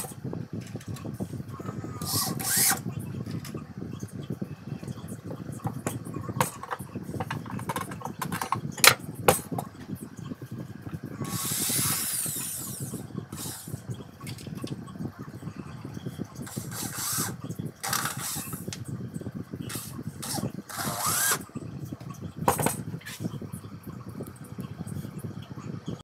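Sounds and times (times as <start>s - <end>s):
grinding machine low rumble: 0.0s - 26.0s
hissing burst of grinding: 11.2s - 13.8s, 16.4s - 18.7s, 19.7s - 21.4s.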